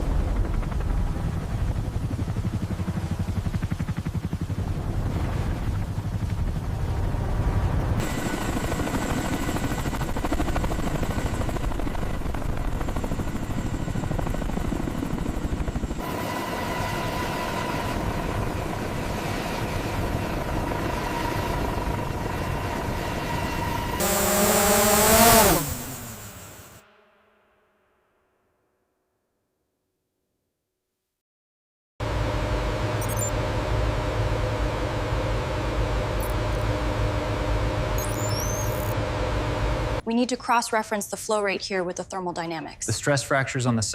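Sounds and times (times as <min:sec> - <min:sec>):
helicopter rotor beat: 0:00.0 - 0:26.8, 0:32.0 - 0:43.9
turbine whine: 0:04.6 - 0:27.6, 0:32.0 - 0:40.0.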